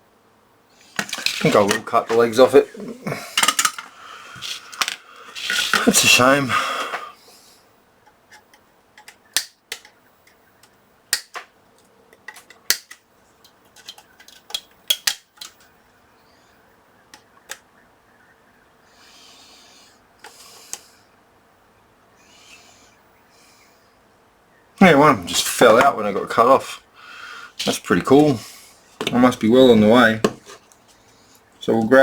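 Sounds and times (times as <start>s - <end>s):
soft hisses: 0.7s - 7.8s, 24.8s - 32.0s.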